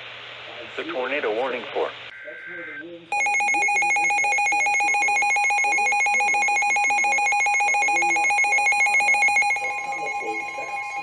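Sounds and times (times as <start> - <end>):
electronic alert tone: 3.2 - 11.0
second alert tone: 5.9 - 11.0.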